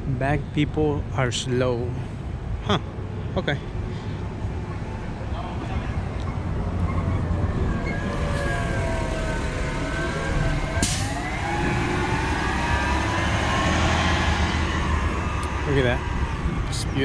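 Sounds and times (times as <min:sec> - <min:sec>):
low engine rumble: 0:00.0 - 0:17.0
emergency siren wailing: 0:05.7 - 0:17.0.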